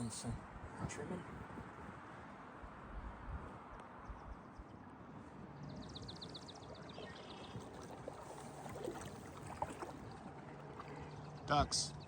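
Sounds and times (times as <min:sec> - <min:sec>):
water trickling: 0:05.9 - 0:12.0
paddle strokes in water: 0:06.2 - 0:11.5.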